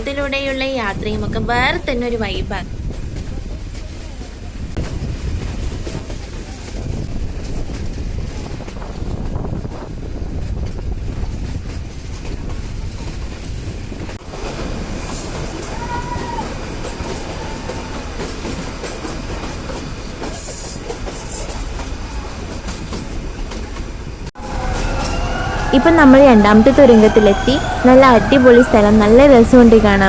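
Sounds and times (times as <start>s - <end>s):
train rumbling on track: 0.0s - 30.0s
wheels clacking over rail joints: 10.5s - 25.8s.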